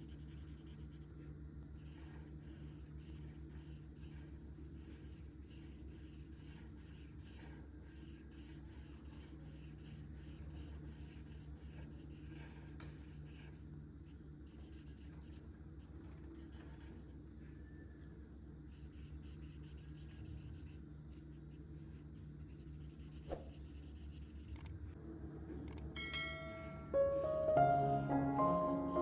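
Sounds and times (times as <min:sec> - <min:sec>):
marker scratching on paper: 0:01.8 - 0:13.6, 0:14.5 - 0:15.4, 0:16.4 - 0:17.1, 0:18.7 - 0:24.6.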